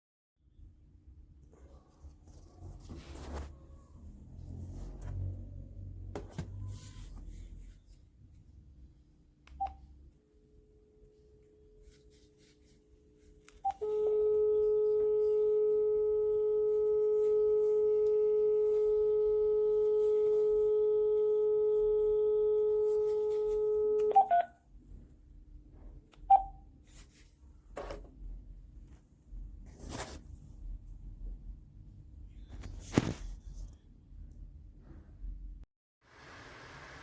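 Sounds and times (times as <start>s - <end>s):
phone dial tone: 13.5s - 24.6s
phone key beeps: 24.0s - 24.5s, 26.2s - 26.6s.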